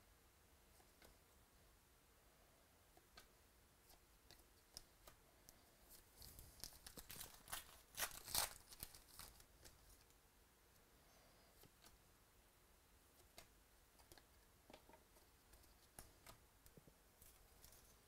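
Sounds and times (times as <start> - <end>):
plastic packaging crinkling: 6.2 - 9.7.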